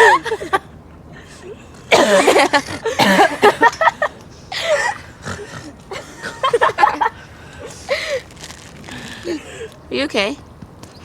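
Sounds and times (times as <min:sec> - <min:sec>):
girls laughing: 0:00.0 - 0:08.3
girl coughing: 0:01.9 - 0:03.7.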